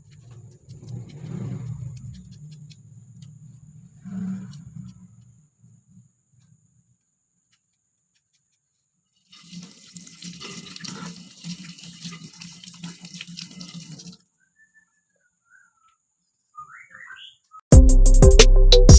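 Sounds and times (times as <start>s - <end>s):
tap water running into a sink: 9.3s - 14.2s
faint high chirps: 14.4s - 17.6s.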